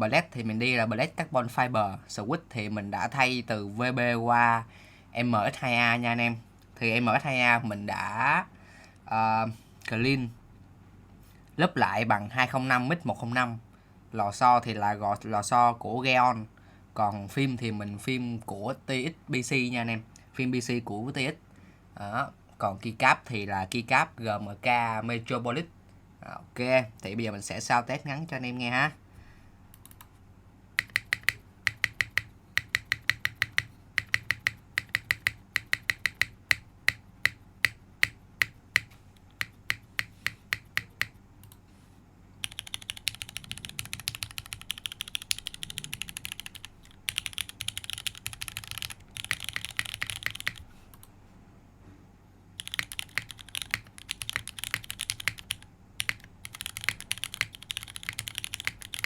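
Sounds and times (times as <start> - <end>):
mechanical keyboard typing: 30.8 - 41.6, 42.4 - 50.6, 52.6 - 59.0.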